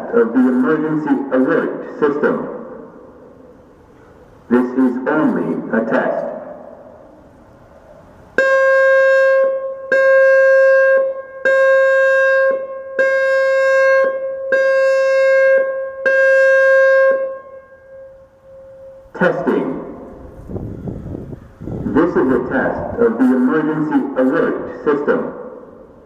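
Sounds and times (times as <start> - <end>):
warning siren pulsed tone: 8.0 - 23.4.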